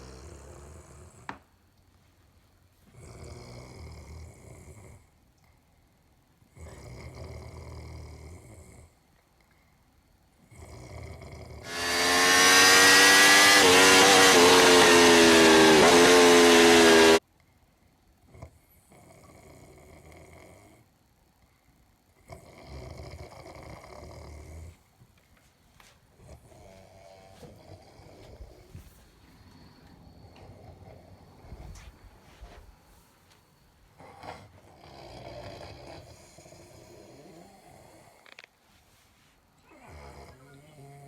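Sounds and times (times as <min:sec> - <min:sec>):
man snoring: 0:03.0 - 0:05.0, 0:10.5 - 0:17.2, 0:22.3 - 0:24.7, 0:34.0 - 0:38.3.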